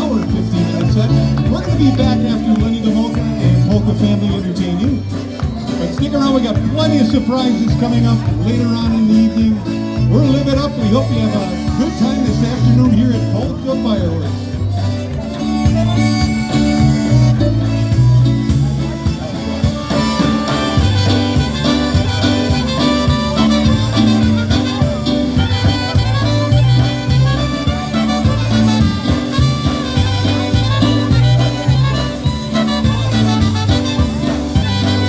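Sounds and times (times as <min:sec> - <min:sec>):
polka band playing: 0:00.0 - 0:35.0.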